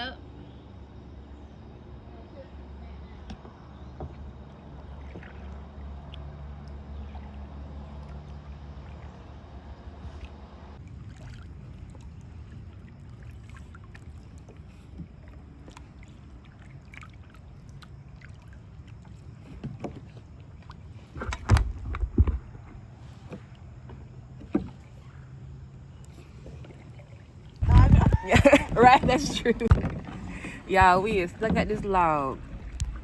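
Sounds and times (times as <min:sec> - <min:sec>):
low rumble of paddling: 0:00.0 - 0:33.0
small water splashes: 0:03.3 - 0:33.0
knocks against kayak: 0:27.6 - 0:31.8.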